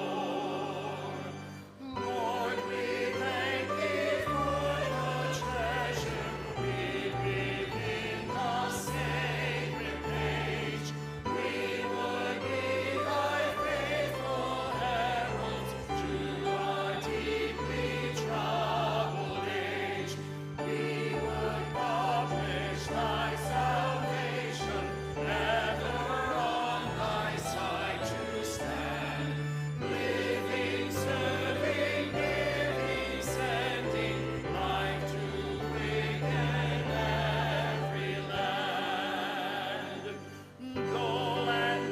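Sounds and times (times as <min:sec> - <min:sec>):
choir singing a hymn: 0:00.0 - 0:41.9
instrumental accompaniment: 0:00.0 - 0:41.9.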